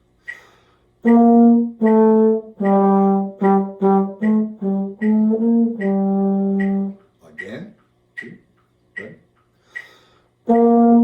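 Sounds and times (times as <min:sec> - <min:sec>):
metronome clicking: 0:00.2 - 0:11.0
wind instrument playing slow melody: 0:01.0 - 0:07.0, 0:10.5 - 0:11.0.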